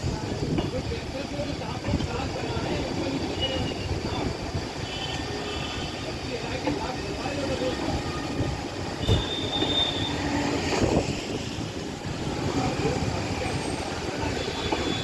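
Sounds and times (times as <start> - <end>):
train wheels rumbling on rails: 0.0 - 15.0
knocks of train wheels: 8.9 - 15.0
high-pitched wheel squeal: 9.0 - 11.6.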